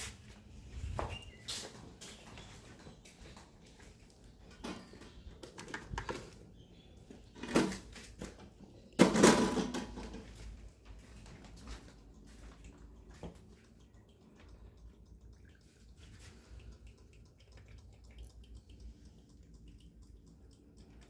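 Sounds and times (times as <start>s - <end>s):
objects knocking and clattering: 7.3s - 10.6s.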